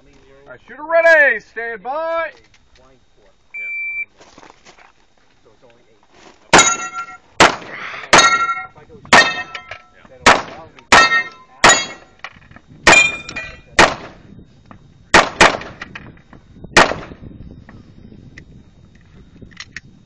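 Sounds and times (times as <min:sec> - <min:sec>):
gunshots: 0:06.5 - 0:09.6, 0:10.2 - 0:12.1, 0:12.9 - 0:14.2, 0:15.1 - 0:15.8, 0:16.8 - 0:17.2
steel targets ringing: 0:06.5 - 0:12.2, 0:12.9 - 0:13.8.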